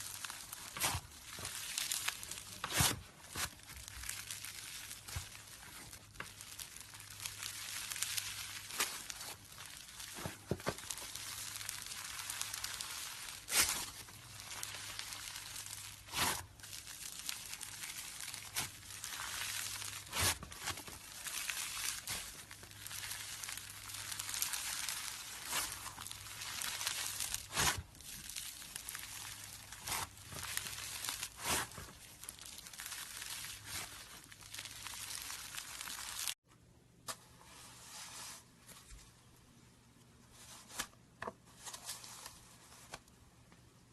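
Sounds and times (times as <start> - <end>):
slime crackling: 0.0 - 36.4.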